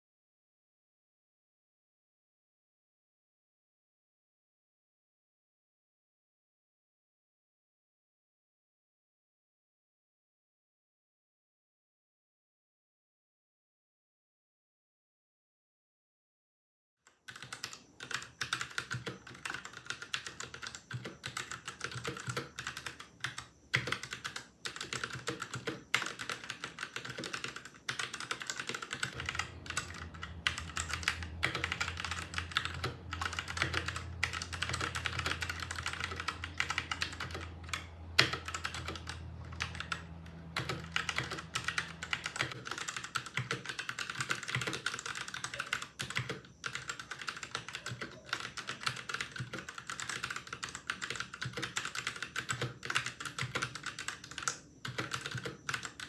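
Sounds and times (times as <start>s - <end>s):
fast mechanical keyboard typing: 17.3s - 56.0s
low steady hum: 28.3s - 42.9s.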